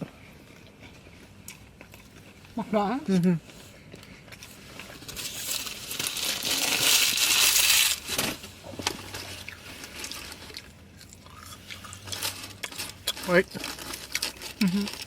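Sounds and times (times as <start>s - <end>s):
paper wrapping crinkling: 5.0s - 8.4s.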